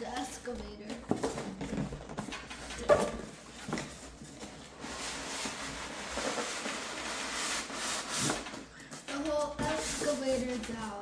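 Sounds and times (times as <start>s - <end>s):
packaging rubbing and scraping: 2.2s - 11.0s.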